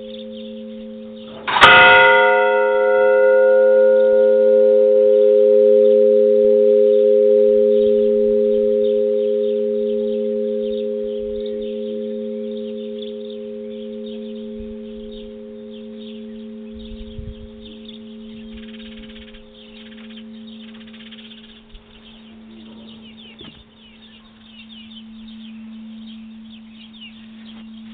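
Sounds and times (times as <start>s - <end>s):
church bell ringing: 0.0s - 27.9s.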